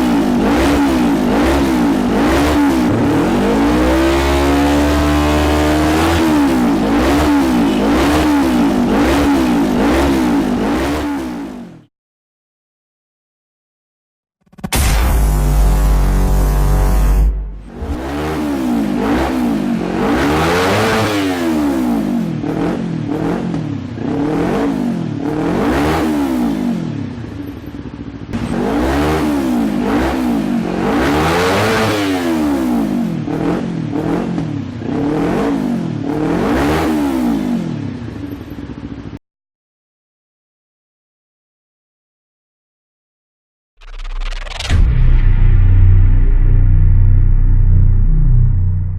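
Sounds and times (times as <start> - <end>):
motorcycle engine revving: 0.0 - 11.9, 14.4 - 27.4, 28.3 - 39.2.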